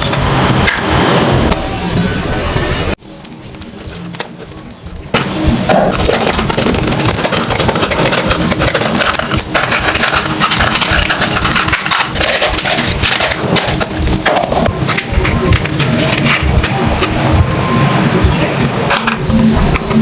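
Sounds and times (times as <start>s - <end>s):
scraping rattle: 5.7s - 16.8s.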